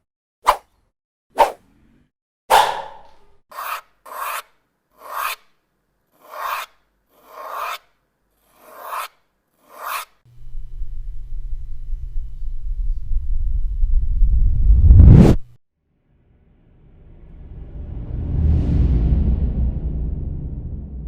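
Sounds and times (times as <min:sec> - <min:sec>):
low rumble: 0:10.5 - 0:15.4, 0:16.5 - 0:21.0.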